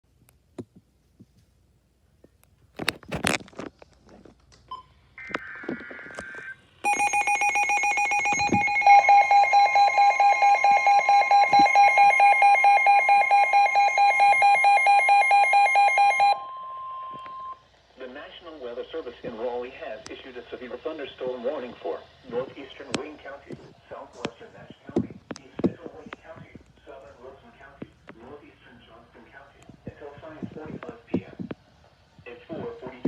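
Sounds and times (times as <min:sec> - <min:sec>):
warbling data tones: 0:05.4 - 0:16.4
steady warning tone: 0:06.8 - 0:17.6
pulsing alarm beep: 0:06.9 - 0:17.6.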